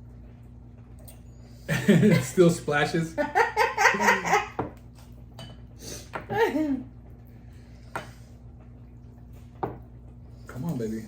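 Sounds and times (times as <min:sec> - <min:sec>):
faint steady hum: 0:00.0 - 0:11.0
person laughing: 0:03.2 - 0:04.6.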